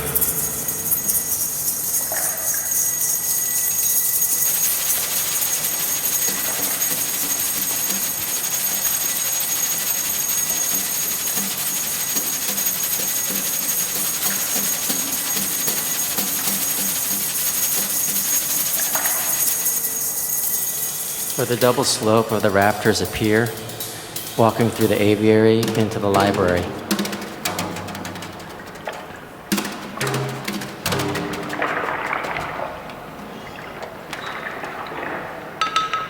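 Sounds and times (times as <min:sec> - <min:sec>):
high ringing tones: 0:00.0 - 0:27.1
shimmering jingle of shaken percussion: 0:00.0 - 0:28.0, 0:29.5 - 0:32.7.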